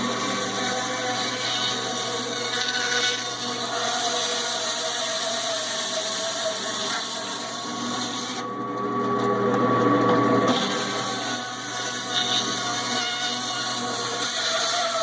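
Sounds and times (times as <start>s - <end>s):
band saw cutting meat: 0.0s - 15.0s.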